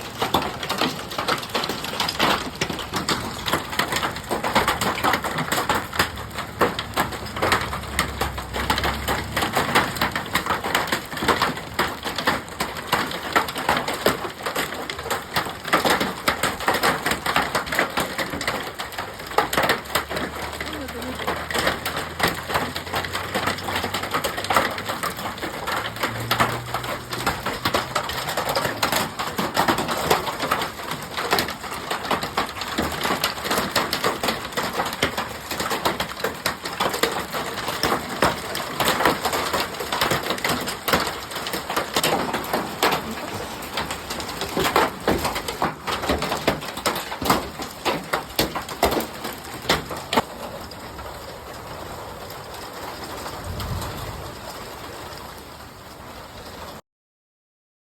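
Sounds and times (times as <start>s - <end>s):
hailstones clattering: 0.0s - 55.4s.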